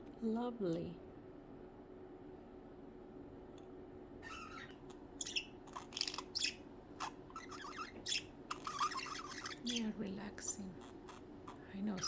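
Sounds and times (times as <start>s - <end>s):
faint steady hum: 0.0s - 12.0s
budgerigars chirping: 4.2s - 12.0s.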